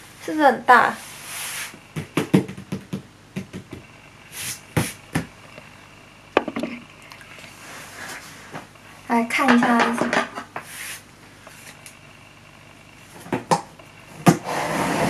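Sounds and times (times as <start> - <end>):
knocks and taps on cardboard: 2.0 - 3.9.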